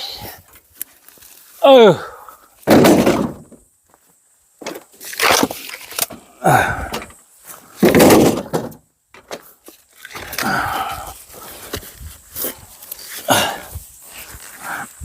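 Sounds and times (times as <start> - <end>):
wooden logs thudding: 2.6 - 3.7, 4.6 - 9.5.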